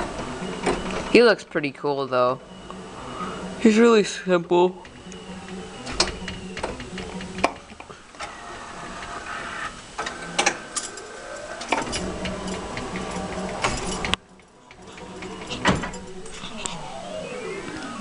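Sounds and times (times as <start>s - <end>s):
claw machine motor whir: 2.4s - 18.0s
claw mechanism clicks and knocks: 4.8s - 8.3s.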